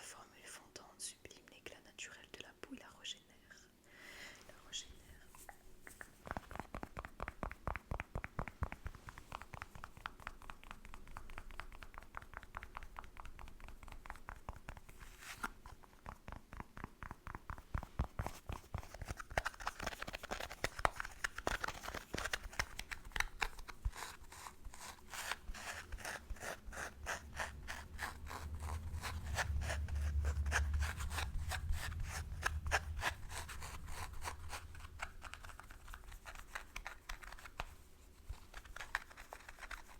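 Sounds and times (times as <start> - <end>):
low rumble: 26.9 - 35.8.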